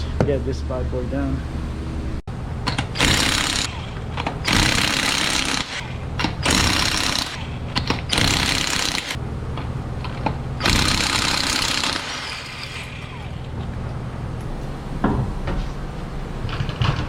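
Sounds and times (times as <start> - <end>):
pneumatic impact wrench hammering: 2.6 - 9.2, 10.0 - 13.6.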